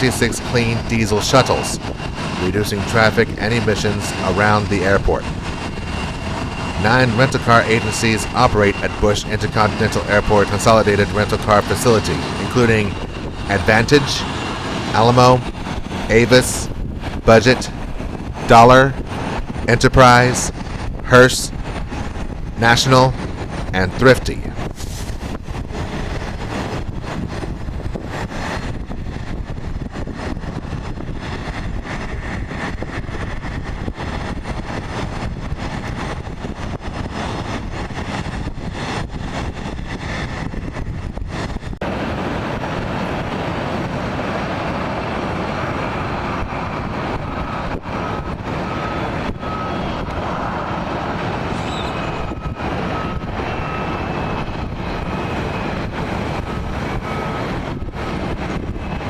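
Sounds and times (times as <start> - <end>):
jet engine rush: 0.0 - 35.8.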